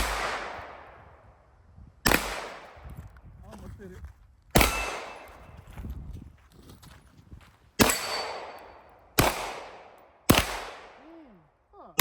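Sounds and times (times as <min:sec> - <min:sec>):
gunshots: 0:00.0 - 0:01.0, 0:02.1 - 0:02.8, 0:04.6 - 0:05.4, 0:07.8 - 0:08.6, 0:09.2 - 0:11.0.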